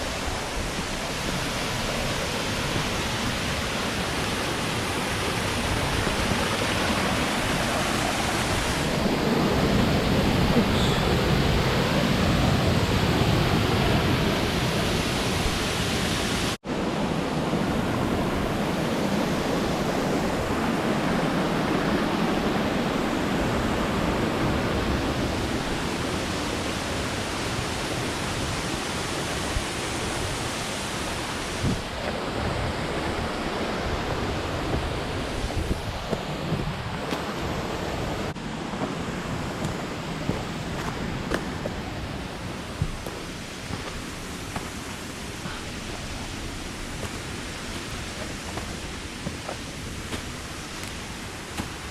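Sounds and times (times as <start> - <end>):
waterfall rushing: 0.0 - 51.9.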